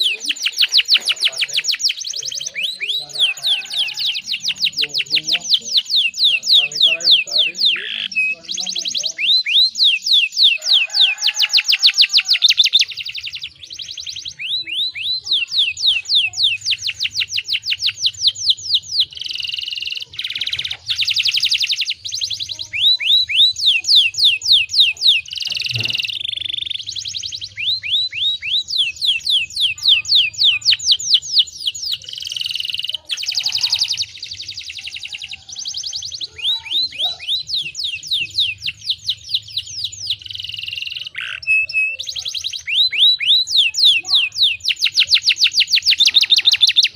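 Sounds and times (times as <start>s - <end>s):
canary singing trills: 0.0s - 46.9s.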